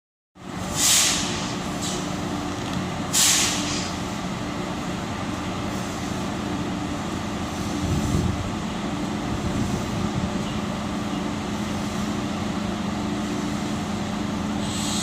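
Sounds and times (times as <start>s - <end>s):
electric train humming: 0.5s - 15.0s
compressed air hiss: 0.7s - 2.1s, 3.1s - 4.1s, 14.6s - 15.0s.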